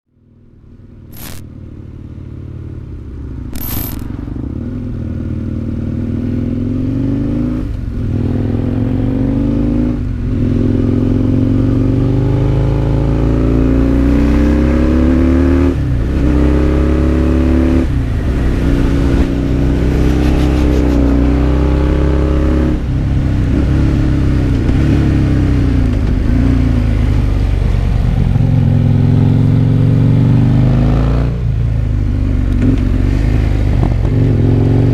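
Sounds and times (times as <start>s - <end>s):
sharp clicks: 1.1s - 1.4s, 3.5s - 4.2s
motorcycle engine shifting gears: 14.1s - 31.0s.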